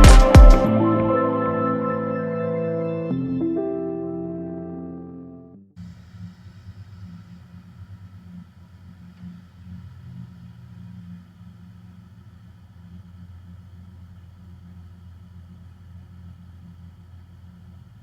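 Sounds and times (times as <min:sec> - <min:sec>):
truck engine idling: 0:05.8 - 0:18.0.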